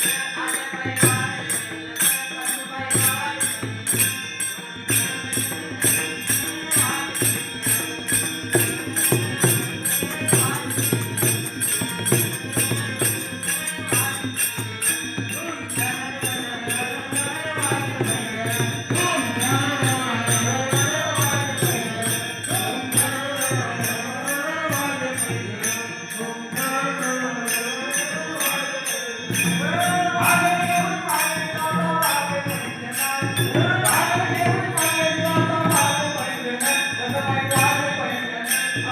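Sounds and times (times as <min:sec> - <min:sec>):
jingling percussion: 0:00.0 - 0:38.9
person singing devotional song: 0:00.0 - 0:38.9.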